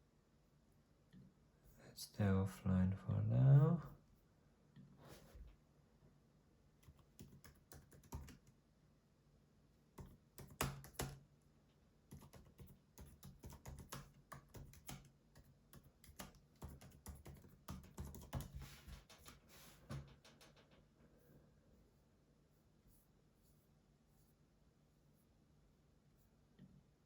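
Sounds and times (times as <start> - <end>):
laptop keyboard typing: 6.8 - 8.6, 10.0 - 11.2, 12.1 - 19.4.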